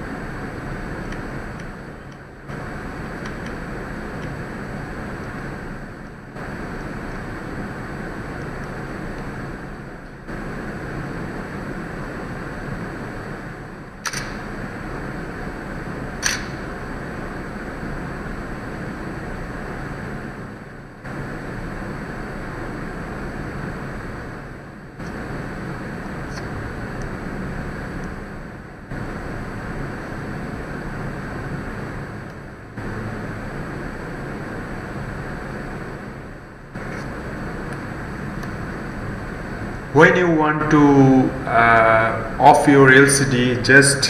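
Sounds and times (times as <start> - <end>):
low hum: 0.0 - 44.0
sharp click: 14.0 - 14.4, 16.2 - 16.6.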